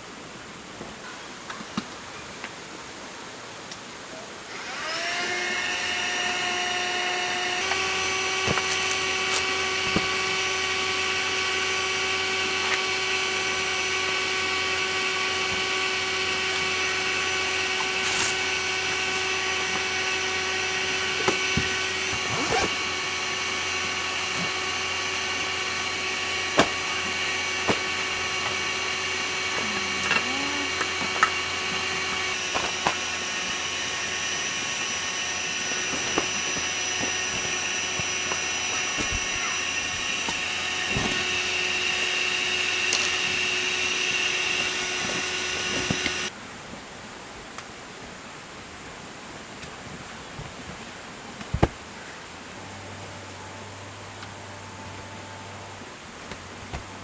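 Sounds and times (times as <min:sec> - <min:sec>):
small electric motor whine: 0:04.4 - 0:46.4.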